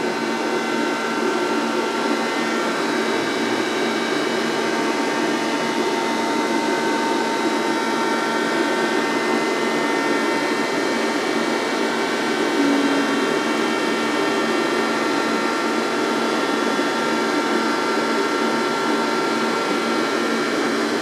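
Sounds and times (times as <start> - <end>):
faint steady whines: 0.0 - 21.0
lathe motor whirring: 0.0 - 21.0.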